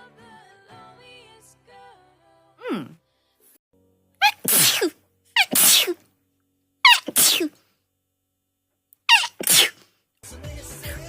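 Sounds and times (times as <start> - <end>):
woman sneezing: 2.6 - 3.0, 4.2 - 6.1, 6.9 - 7.6, 9.1 - 9.9.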